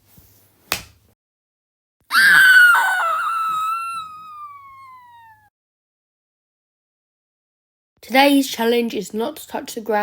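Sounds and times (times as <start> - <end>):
high-pitched scream sliding down: 2.1 - 5.4.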